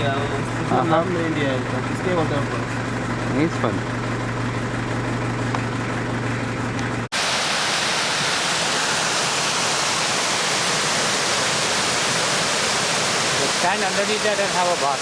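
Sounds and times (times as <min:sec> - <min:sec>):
vehicle engine idling: 0:00.0 - 0:07.2
waterfall rushing: 0:07.1 - 0:15.0.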